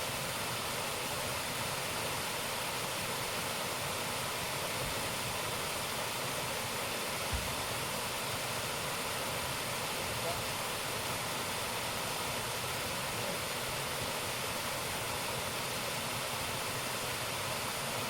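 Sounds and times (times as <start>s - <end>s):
waterfall roaring: 0.0s - 18.0s
low thump: 7.3s - 7.6s.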